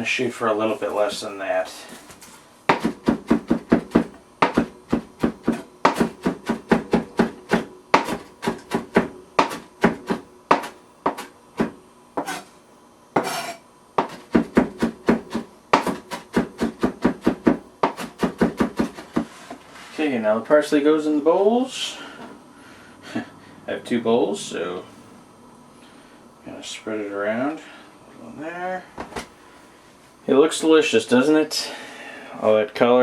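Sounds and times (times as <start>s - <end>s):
knife scraping cutting board: 2.7s - 11.3s, 12.2s - 12.6s, 13.2s - 20.0s
knife chopping on cutting board: 2.7s - 12.5s, 13.2s - 19.4s.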